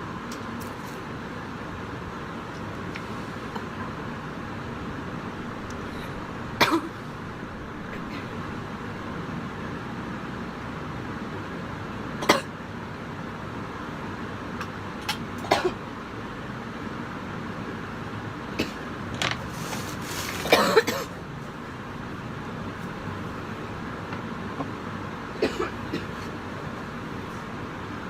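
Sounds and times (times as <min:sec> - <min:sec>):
steady background noise: 0:00.0 - 0:28.0
woman coughing: 0:06.6 - 0:07.0, 0:15.5 - 0:15.8, 0:20.4 - 0:21.2, 0:25.4 - 0:26.2.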